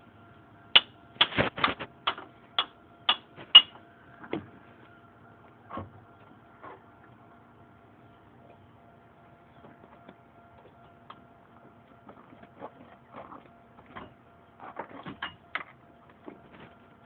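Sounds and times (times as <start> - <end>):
faint steady hum: 0.0 - 17.0.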